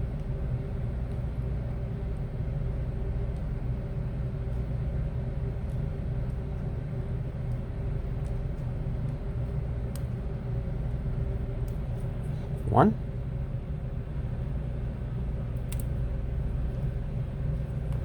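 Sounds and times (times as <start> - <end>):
low machine hum: 0.0 - 18.0
faint small clicks: 15.6 - 15.9.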